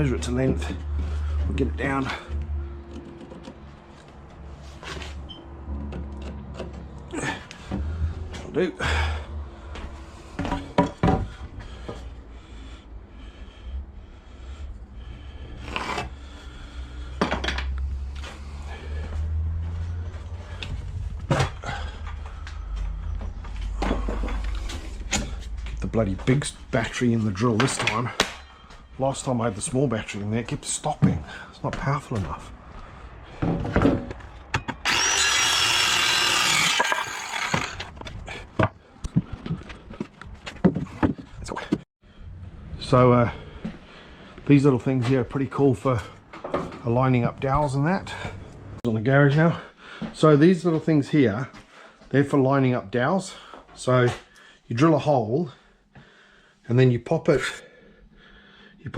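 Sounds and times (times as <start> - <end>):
wood and tools scraping: 0.3 - 8.6, 15.3 - 25.9, 33.4 - 41.8
cordless drill boring into wood: 34.8 - 38.0.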